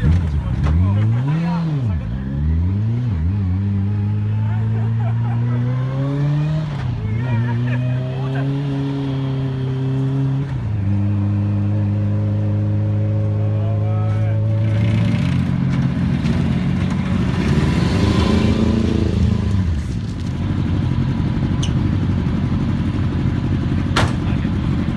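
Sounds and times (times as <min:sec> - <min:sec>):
motorcycle engine running hard: 0:14.3 - 0:24.9.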